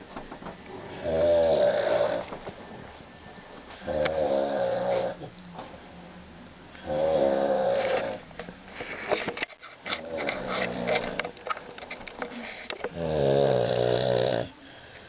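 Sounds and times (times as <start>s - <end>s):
person snoring: 0.9s - 2.3s, 3.8s - 5.3s, 6.8s - 8.2s, 12.9s - 14.8s
rattling breath noises: 8.7s - 13.0s.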